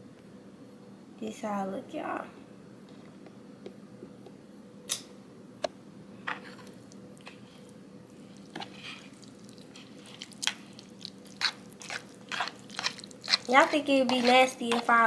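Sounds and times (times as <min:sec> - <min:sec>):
noodles squishing in sauce: 0:06.6 - 0:15.0.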